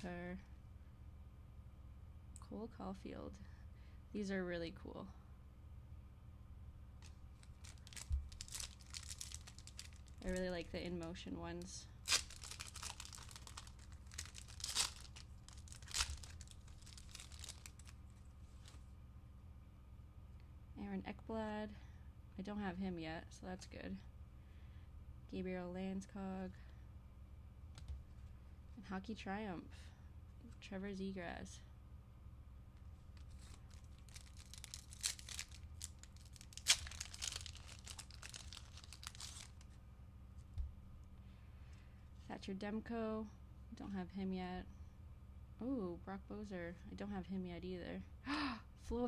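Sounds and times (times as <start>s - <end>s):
wrapper ripping open: 7.0s - 10.7s, 12.0s - 18.0s, 33.2s - 39.7s.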